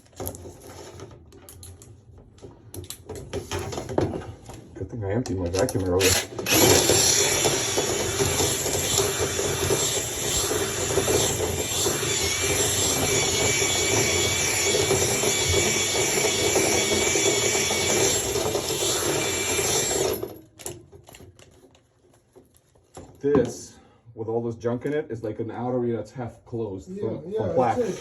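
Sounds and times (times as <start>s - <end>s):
vacuum motor whining: 6.1s - 20.3s.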